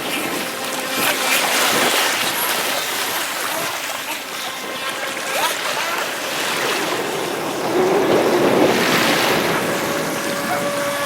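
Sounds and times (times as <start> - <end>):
sea surf washing in: 0.0 - 11.0
wind buffeting microphone: 0.0 - 11.0
faint high electric motor whine: 4.0 - 11.0.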